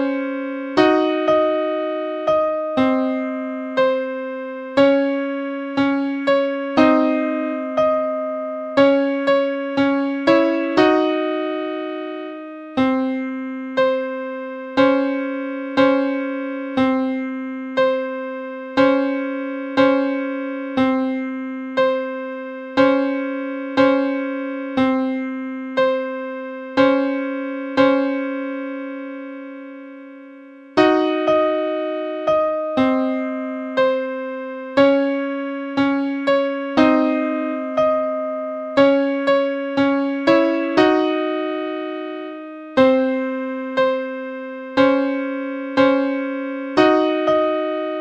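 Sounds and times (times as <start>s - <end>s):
electric piano notes: 44.8s - 48.0s.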